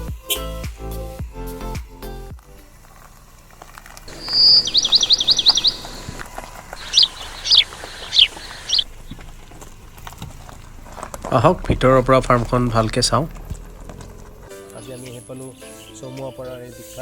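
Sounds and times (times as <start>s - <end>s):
bird singing: 4.0s - 17.0s.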